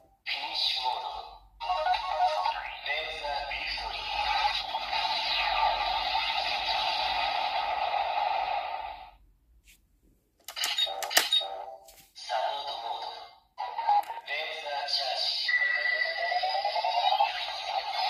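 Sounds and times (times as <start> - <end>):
toy playing electronic music: 0.4 - 7.3, 10.6 - 18.0.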